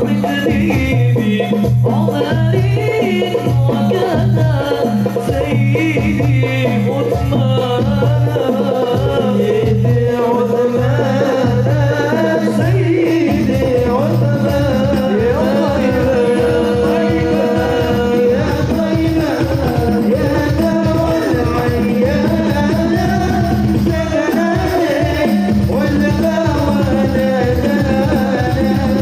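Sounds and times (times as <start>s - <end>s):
person singing: 0.0s - 29.0s
steady drum beat: 0.0s - 29.0s.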